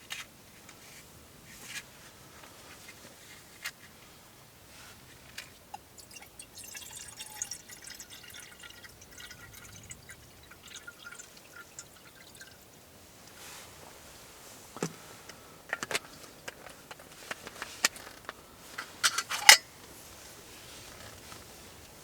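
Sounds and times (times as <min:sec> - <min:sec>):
water dripping and splashing: 0:05.9 - 0:13.4.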